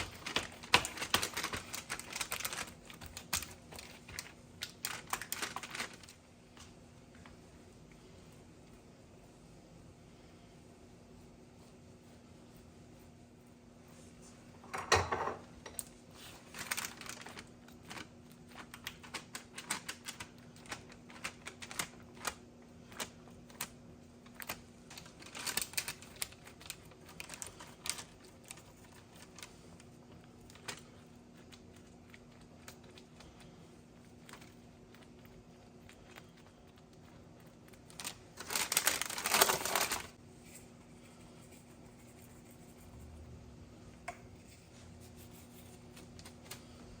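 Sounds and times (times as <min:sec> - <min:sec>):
faint steady hum: 0:00.0 - 0:47.0
dishes clattering: 0:14.7 - 0:15.5.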